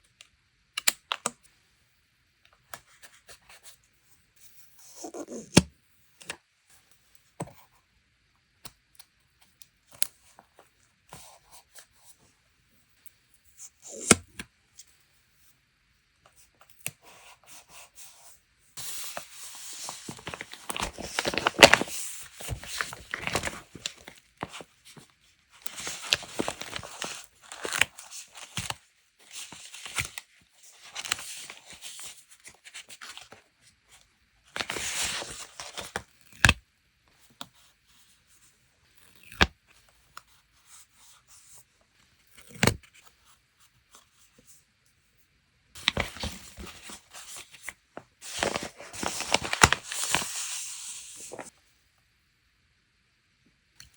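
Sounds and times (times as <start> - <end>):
paper rustling and tearing: 18.8 - 25.0, 25.7 - 32.1, 45.8 - 51.5.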